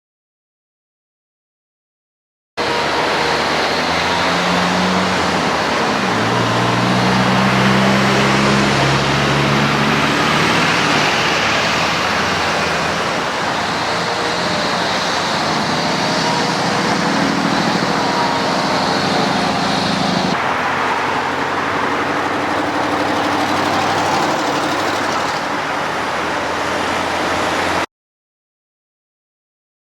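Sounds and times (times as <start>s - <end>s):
vehicle engines humming: 2.6s - 27.8s.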